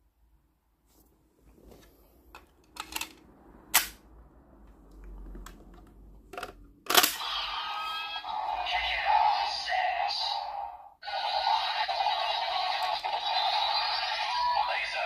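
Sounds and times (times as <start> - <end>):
plastic toy clicks and snaps: 6.4 - 7.2.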